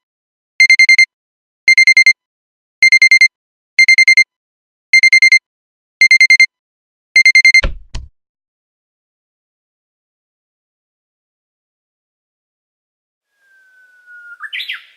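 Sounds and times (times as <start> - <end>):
alarm clock beeping: 0.6 - 1.1, 1.7 - 2.2, 2.8 - 4.3, 5.0 - 5.4, 6.0 - 6.5, 7.2 - 7.6.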